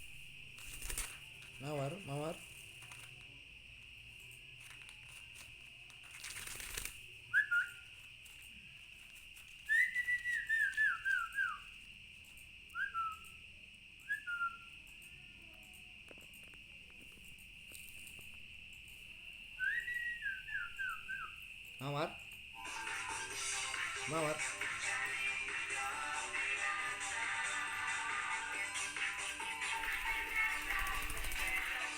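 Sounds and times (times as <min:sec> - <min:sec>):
whistled falling notes: 0:09.6 - 0:11.7, 0:12.7 - 0:13.4, 0:19.6 - 0:21.4.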